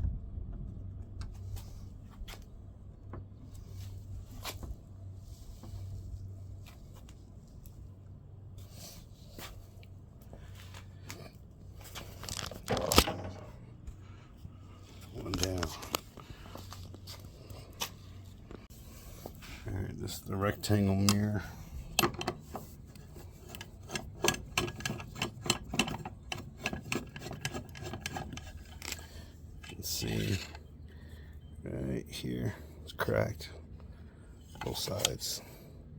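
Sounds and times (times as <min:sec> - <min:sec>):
faint low hum: 0:00.0 - 0:35.9
light clicks of small parts handled: 0:15.0 - 0:18.7, 0:34.5 - 0:35.4.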